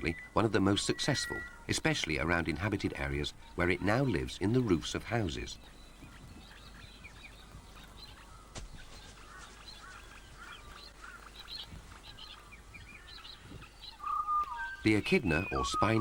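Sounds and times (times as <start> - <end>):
faint bird chirps: 0.0 - 16.0
low background hiss: 0.0 - 16.0.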